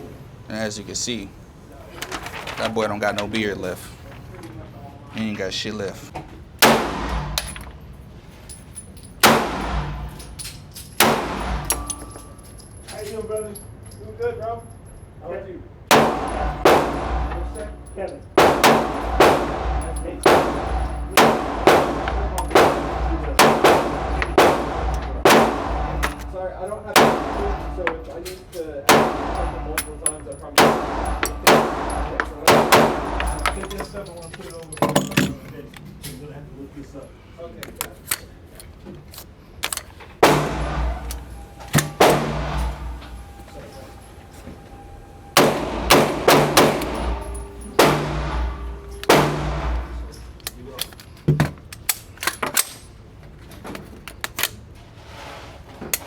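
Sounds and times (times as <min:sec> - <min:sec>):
gunshots echoing: 0:06.6 - 0:07.7, 0:09.2 - 0:10.4, 0:11.0 - 0:12.2, 0:15.9 - 0:28.2, 0:28.9 - 0:33.9, 0:40.2 - 0:43.2, 0:45.4 - 0:50.4
gun handling clicks: 0:26.0 - 0:26.4, 0:37.6 - 0:40.2, 0:50.1 - 0:53.0, 0:53.7 - 0:54.6.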